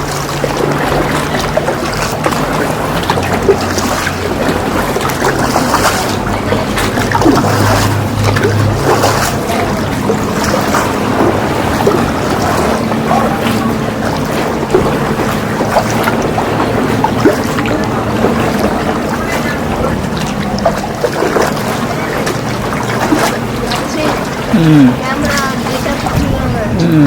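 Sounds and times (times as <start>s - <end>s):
boat engine humming: 0.0s - 27.0s
water noise: 0.0s - 27.0s
wind on microphone: 22.7s - 27.0s.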